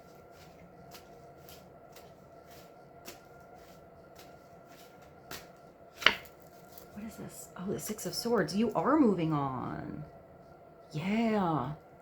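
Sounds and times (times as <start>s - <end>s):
faint steady hum: 0.0s - 12.0s
cards being shuffled: 0.2s - 7.0s.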